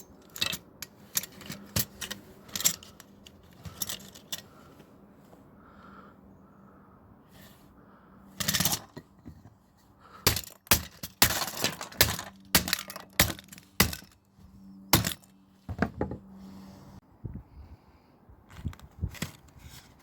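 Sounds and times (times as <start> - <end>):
sharp cracks and knocks: 10.2 - 14.2, 14.9 - 16.0.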